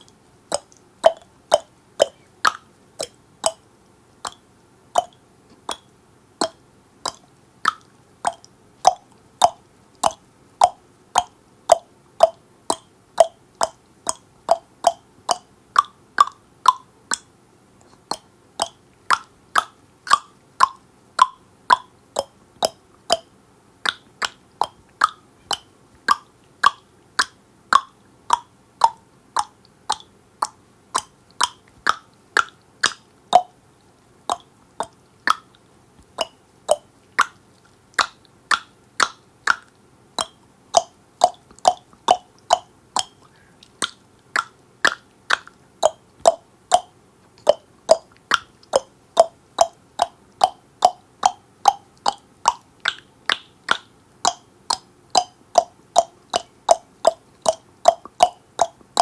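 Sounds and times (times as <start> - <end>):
person clicking tongue: 0.0 - 3.6, 4.2 - 33.6, 34.3 - 59.0.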